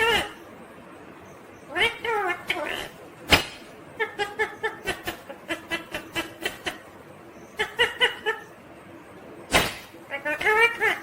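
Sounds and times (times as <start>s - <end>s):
parakeet chuckling notes: 4.0s - 7.0s, 7.6s - 8.6s.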